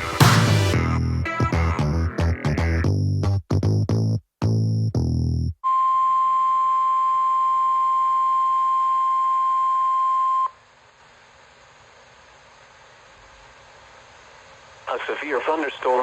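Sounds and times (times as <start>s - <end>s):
faint steady hiss: 10.5s - 16.0s.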